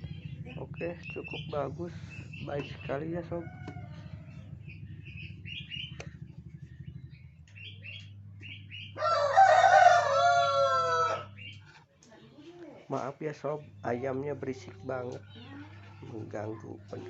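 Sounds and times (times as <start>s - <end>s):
soft bird chirps: 0.0s - 9.1s, 11.2s - 11.8s
rooster crowing: 3.0s - 4.9s, 8.9s - 11.4s.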